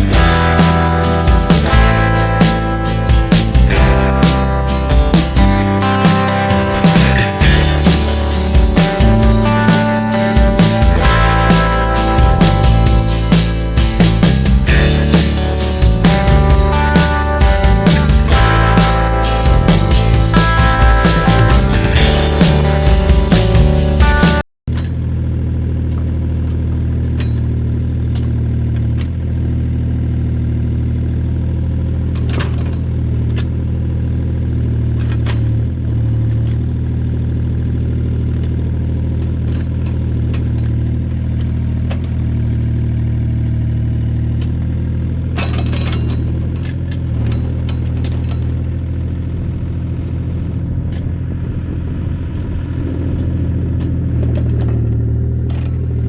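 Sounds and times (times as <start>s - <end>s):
excavator diesel engine running: 0.0s - 56.0s
sharp metal clanks: 27.1s - 27.6s, 45.2s - 51.2s, 53.3s - 56.0s.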